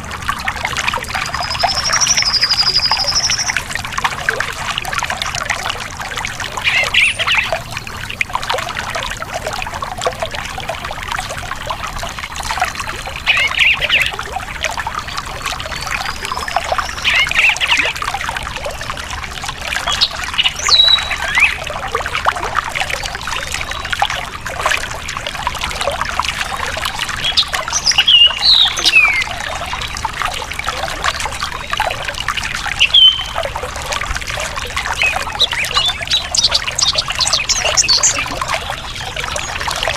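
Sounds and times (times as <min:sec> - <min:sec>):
stream trickling over stones: 0:00.0 - 0:39.9
birds chirping: 0:00.8 - 0:03.8, 0:06.3 - 0:08.2, 0:12.8 - 0:18.0, 0:19.8 - 0:21.7, 0:26.4 - 0:30.0, 0:30.9 - 0:39.9.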